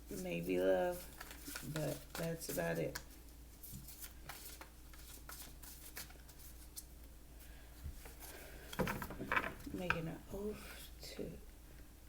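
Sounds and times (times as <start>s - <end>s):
cards clicking and rustling: 1.1s - 6.9s.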